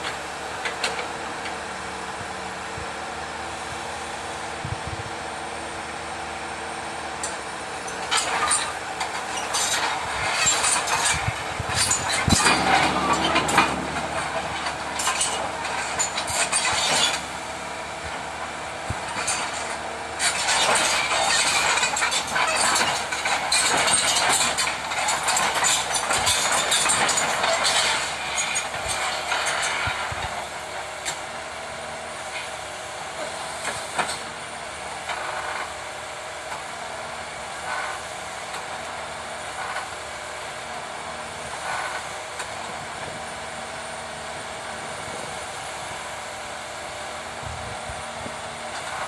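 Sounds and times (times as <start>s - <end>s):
excavator diesel engine running: 0.0s - 49.0s
metallic clanking and rattling: 7.9s - 28.6s.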